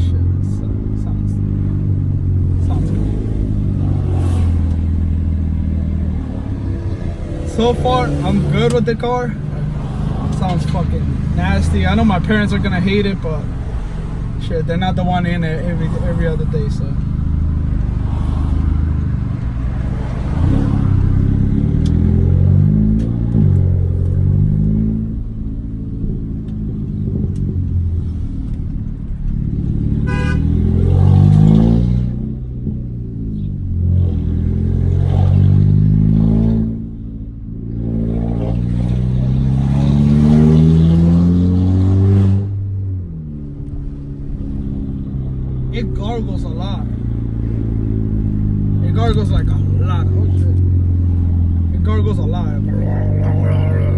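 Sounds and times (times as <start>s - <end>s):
car engine revving loudly: 0.0s - 25.4s, 29.4s - 33.2s, 33.8s - 42.7s.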